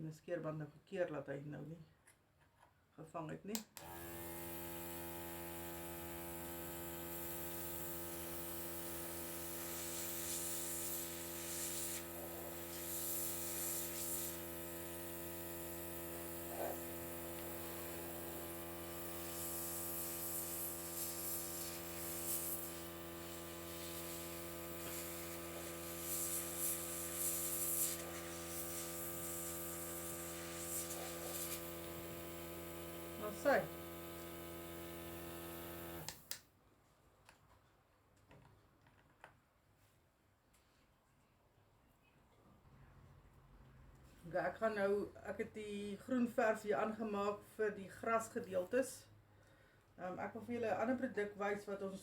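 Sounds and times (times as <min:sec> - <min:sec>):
compressor electric hum: 0:03.8 - 0:36.3
airbrush hissing: 0:04.4 - 0:36.1.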